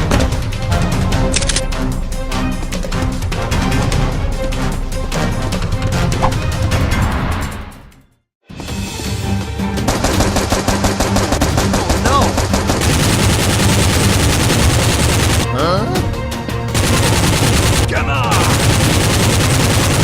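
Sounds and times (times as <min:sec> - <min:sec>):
action background music: 0:00.0 - 0:20.0
automatic gunfire: 0:09.9 - 0:15.5, 0:16.7 - 0:20.0.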